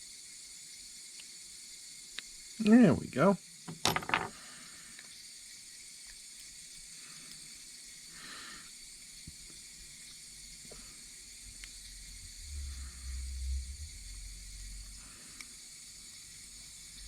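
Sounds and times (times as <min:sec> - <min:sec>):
quiet steady hiss: 0:00.0 - 0:17.0.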